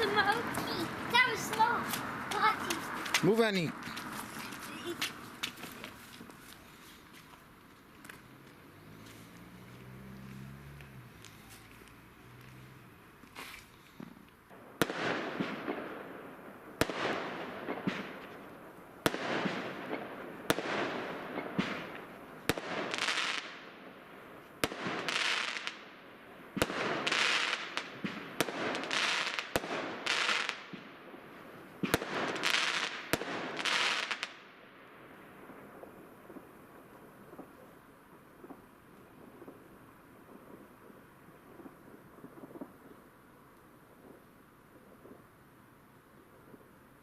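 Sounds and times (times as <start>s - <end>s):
firework shots cracking and hissing: 0.0s - 47.0s.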